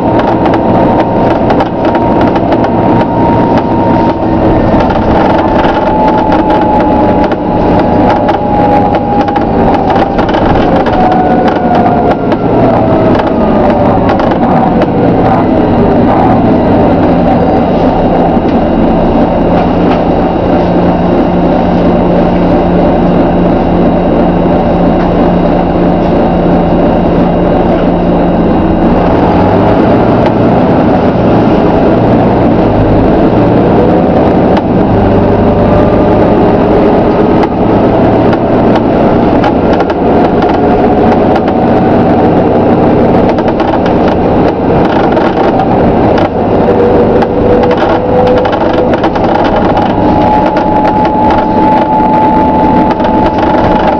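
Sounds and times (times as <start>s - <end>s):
bus body creaking and clicking: 0.0s - 53.9s
bus engine whining under load: 0.0s - 53.9s.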